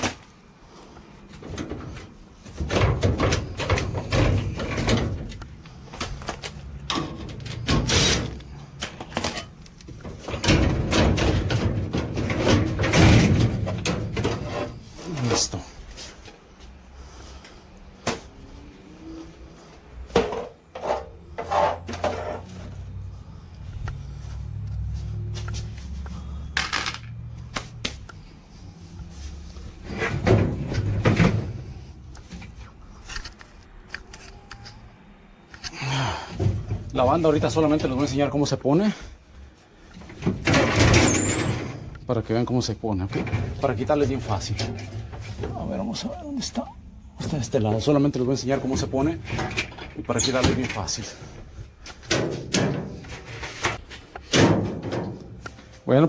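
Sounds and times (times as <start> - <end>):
loud scraping knocks of metal parts: 1.3 - 15.5, 20.0 - 22.8, 29.8 - 32.5, 39.8 - 42.0, 43.1 - 45.6, 48.6 - 55.8
metal parts clicking and scraping: 25.5 - 27.2.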